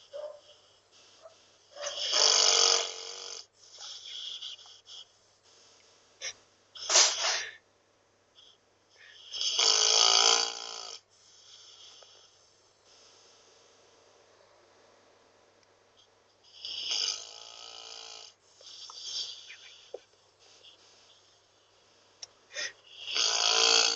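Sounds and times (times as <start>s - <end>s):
dog snoring: 0.0s - 5.1s, 8.4s - 13.5s, 16.4s - 23.9s
dog breathing: 0.0s - 7.6s, 10.5s - 13.9s, 16.4s - 23.9s.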